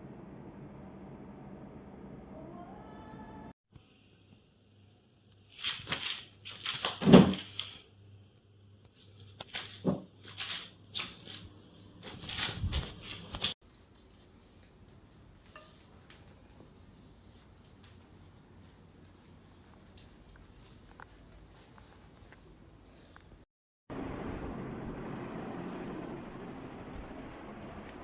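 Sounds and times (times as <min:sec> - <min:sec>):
objects rustling and scraping: 0:05.4 - 0:07.8, 0:08.9 - 0:23.5.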